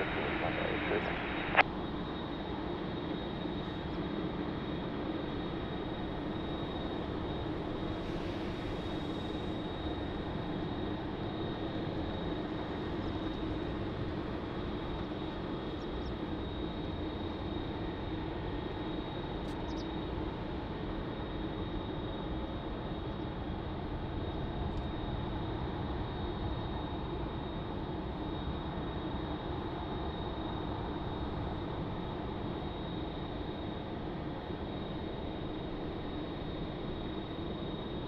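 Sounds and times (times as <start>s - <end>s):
jet engine rumble with whine: 0.0s - 38.0s.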